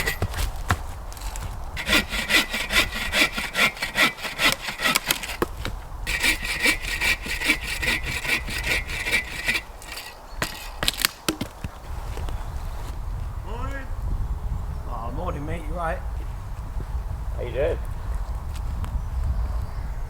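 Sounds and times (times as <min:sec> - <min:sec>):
hand saw cutting wood: 0:00.0 - 0:12.0.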